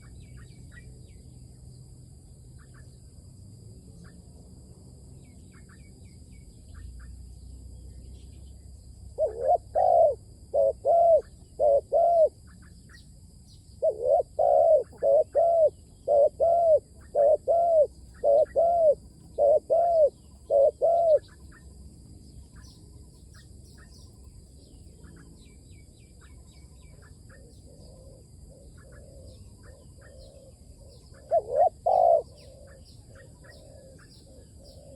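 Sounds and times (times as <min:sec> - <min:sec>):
small birds chirping: 0:00.0 - 0:04.5, 0:05.1 - 0:34.9
dove cooing: 0:09.2 - 0:12.4, 0:13.8 - 0:21.4, 0:27.0 - 0:34.9.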